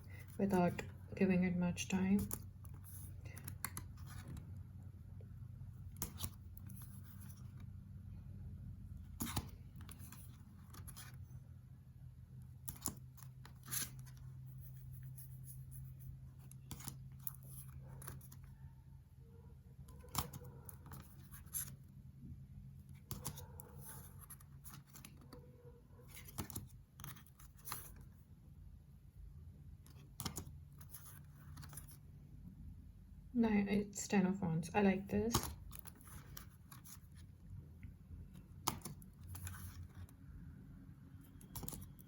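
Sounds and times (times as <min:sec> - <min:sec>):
cards snapping and sliding: 0:05.9 - 0:07.5, 0:09.1 - 0:11.2, 0:12.6 - 0:14.2, 0:16.4 - 0:18.5, 0:19.9 - 0:21.8, 0:26.1 - 0:28.1, 0:29.8 - 0:32.0, 0:38.4 - 0:40.1, 0:41.4 - 0:42.0.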